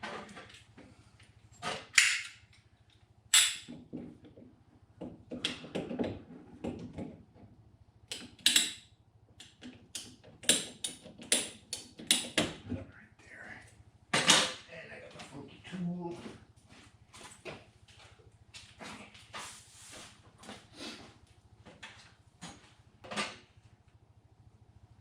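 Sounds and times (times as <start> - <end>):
tools and parts being handled: 1.5 - 4.1.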